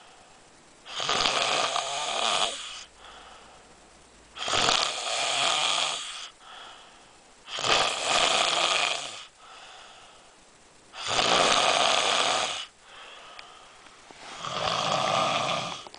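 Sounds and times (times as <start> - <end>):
person snoring: 0.8 - 3.4, 4.4 - 6.9, 7.5 - 10.2, 10.9 - 15.9.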